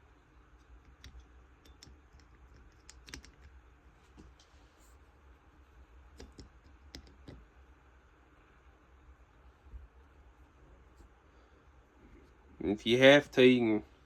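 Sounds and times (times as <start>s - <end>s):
small parts clicking: 0.6s - 3.6s, 6.1s - 7.4s.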